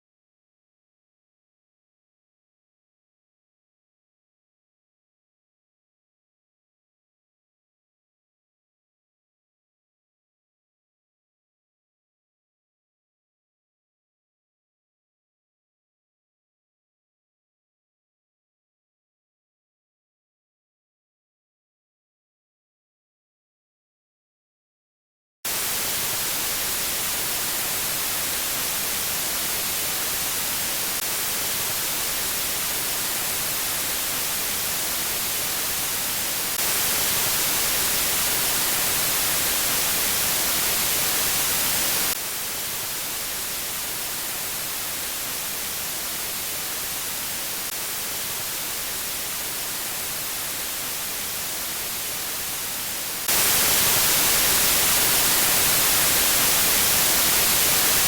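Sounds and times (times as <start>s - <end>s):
test noise hiss: 25.5s - 58.0s.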